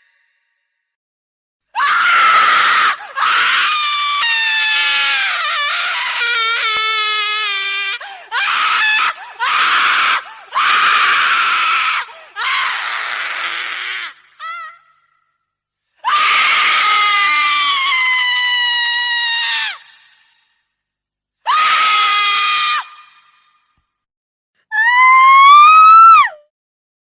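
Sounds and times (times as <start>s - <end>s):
women screaming in terror: 1.8s - 14.9s, 16.0s - 20.1s, 21.5s - 23.4s, 24.7s - 26.4s.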